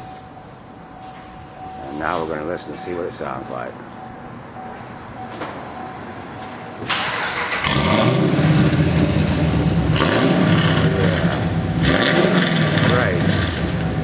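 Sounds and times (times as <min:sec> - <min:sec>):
car engine starting and revving: 0:06.8 - 0:14.0.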